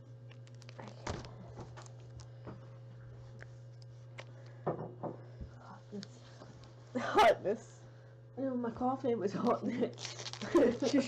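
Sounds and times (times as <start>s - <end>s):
steady low hum: 0.0s - 11.0s
foil wrapper crinkling: 0.3s - 2.3s, 9.4s - 11.0s.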